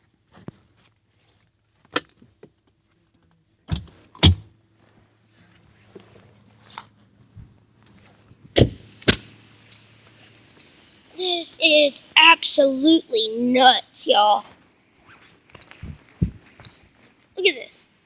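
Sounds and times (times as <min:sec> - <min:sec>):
car idling hum: 0:03.9 - 0:13.1.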